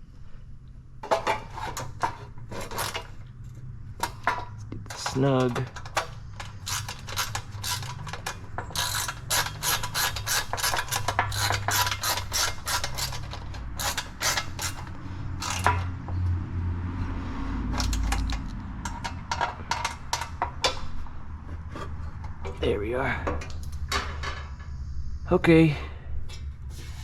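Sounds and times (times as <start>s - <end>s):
steady low hum: 0.0s - 27.0s
ratchet wrench clicking: 5.9s - 15.8s.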